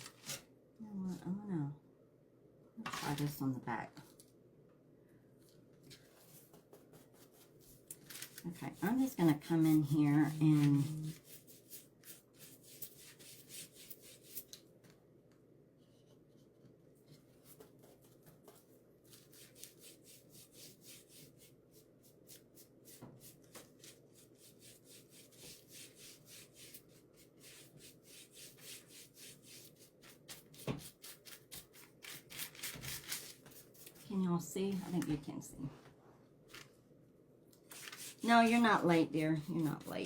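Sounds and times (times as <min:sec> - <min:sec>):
paint brush scrubbing wood: 0:08.5 - 0:14.5, 0:19.1 - 0:34.1, 0:37.7 - 0:40.0.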